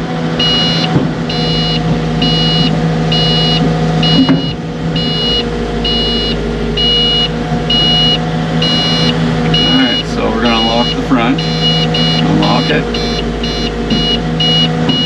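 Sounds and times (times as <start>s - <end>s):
mini excavator running: 0.0s - 15.0s
high-pitched warning beep: 0.4s - 15.0s.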